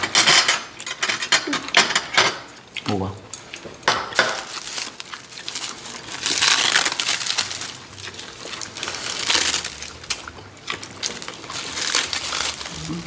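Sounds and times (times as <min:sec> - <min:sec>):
crunching and chewing: 0:02.5 - 0:13.0
crab shell crackling: 0:04.5 - 0:13.0.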